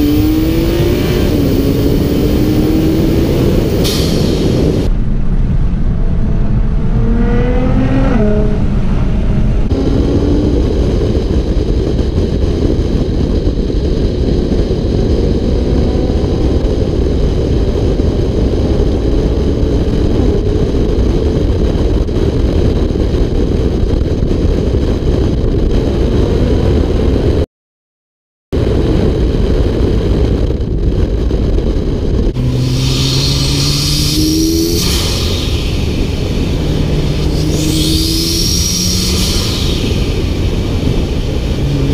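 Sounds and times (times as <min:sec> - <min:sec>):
car engine accelerating hard: 0:00.0 - 0:23.5, 0:32.2 - 0:41.9.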